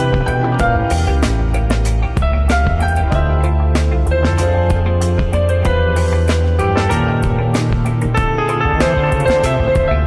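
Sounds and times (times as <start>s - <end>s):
guitar notes: 8.4s - 10.0s.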